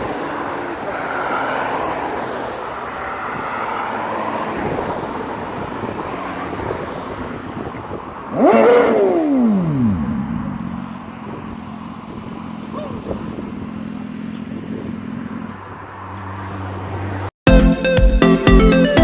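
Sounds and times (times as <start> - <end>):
motorcycle engine revving: 5.6 - 16.2.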